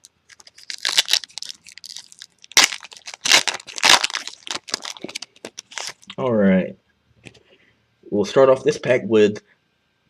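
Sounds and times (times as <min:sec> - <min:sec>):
foil wrapper crinkling and tearing: 0:00.0 - 0:06.1.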